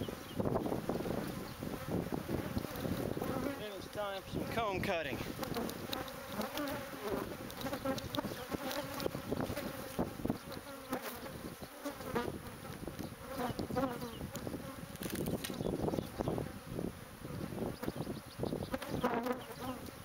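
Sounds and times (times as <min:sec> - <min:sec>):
bee flying past: 0:00.0 - 0:20.0
bees buzzing: 0:00.0 - 0:20.0
clicks and rustles: 0:14.9 - 0:15.6.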